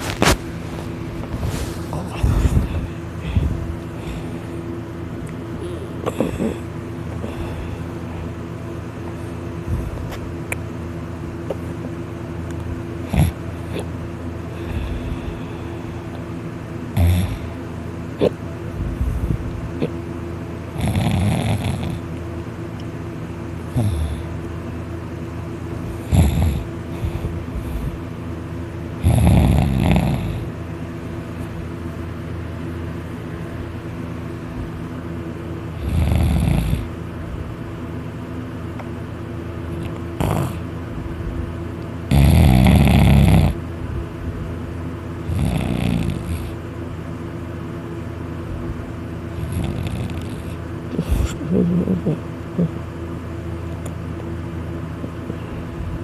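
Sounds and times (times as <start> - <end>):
steady low hum: 0.0 - 56.0
person snoring loudly: 5.6 - 8.0, 13.0 - 13.9, 16.9 - 17.6, 20.7 - 22.1, 23.7 - 24.4, 26.0 - 28.0, 29.0 - 30.5, 35.7 - 37.0, 40.2 - 40.6, 42.1 - 43.6, 45.2 - 46.6, 49.3 - 52.7.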